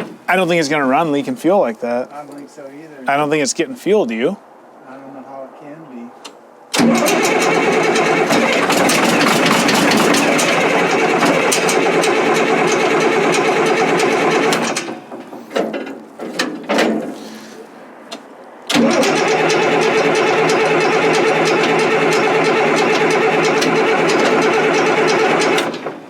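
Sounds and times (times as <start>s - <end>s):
engine cranking on starter: 6.7s - 15.5s, 18.7s - 26.0s.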